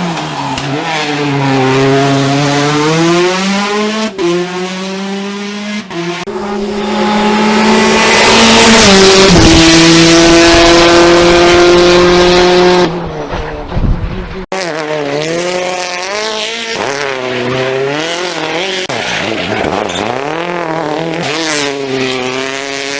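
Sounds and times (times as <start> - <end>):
rally car engine shifting gears: 0.0 - 22.9.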